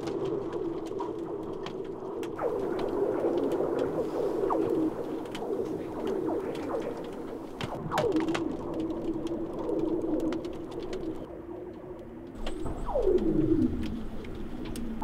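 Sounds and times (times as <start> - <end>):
ice cracking and ticking: 0.0 - 11.3
steady low drone: 2.3 - 15.0.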